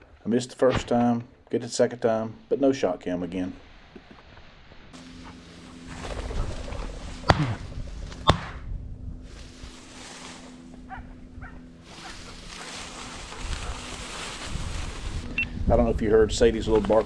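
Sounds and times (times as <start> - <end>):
wind noise on microphone: 6.0 - 9.9, 13.2 - 17.0
shotgun shots: 8.2 - 8.7
dog barking faintly: 10.9 - 13.9.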